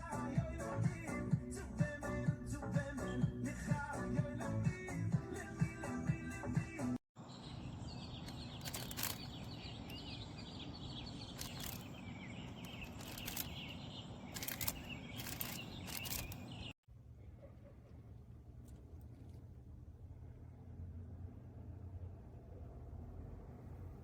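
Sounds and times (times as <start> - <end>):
music: 0.0 - 7.0
bird chirps: 7.2 - 16.8
sharp clicks: 8.2 - 10.0, 11.3 - 16.6.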